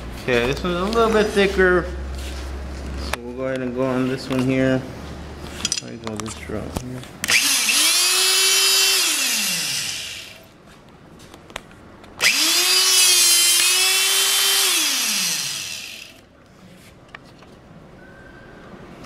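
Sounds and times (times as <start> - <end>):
hydraulic pump motor whining: 7.2 - 10.5, 12.2 - 16.2.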